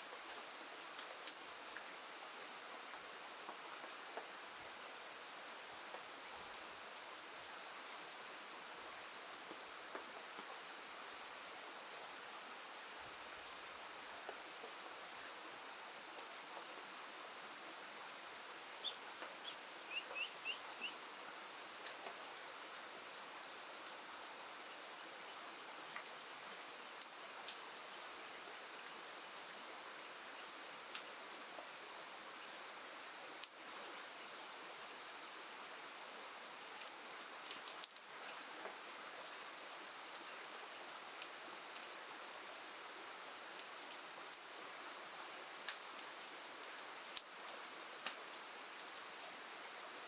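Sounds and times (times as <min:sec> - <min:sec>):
rain: 0:00.0 - 0:50.0
river water: 0:00.0 - 0:50.0
light ticks: 0:00.1 - 0:04.4, 0:09.4 - 0:10.8, 0:11.6 - 0:12.7, 0:13.3 - 0:13.6, 0:16.1 - 0:16.9, 0:23.8 - 0:24.1, 0:25.8 - 0:26.3, 0:26.9 - 0:28.9, 0:30.9 - 0:31.2, 0:33.4 - 0:33.6, 0:36.1 - 0:39.4, 0:40.0 - 0:42.4, 0:43.6 - 0:49.1
bird chirping: 0:18.8 - 0:21.0.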